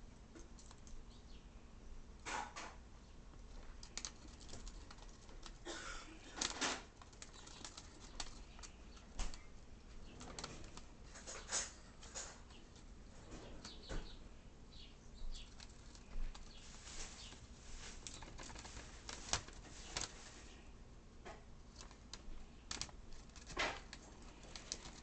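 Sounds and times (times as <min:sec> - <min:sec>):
bird chewing and rustling paper: 0:03.3 - 0:14.0, 0:15.2 - 0:20.7, 0:21.5 - 0:25.0.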